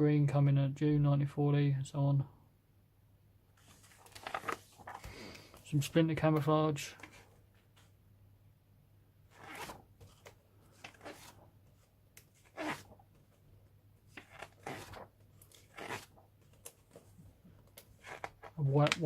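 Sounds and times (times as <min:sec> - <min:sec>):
book pages turning: 0:03.6 - 0:05.6, 0:09.3 - 0:13.4, 0:14.0 - 0:19.0.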